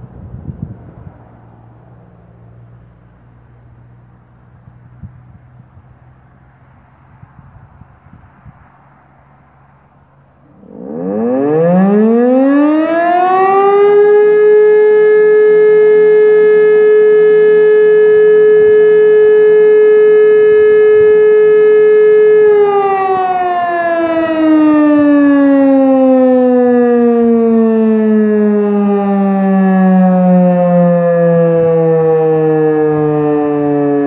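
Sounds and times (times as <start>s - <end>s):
civil defence siren winding down: 8.7s - 34.0s.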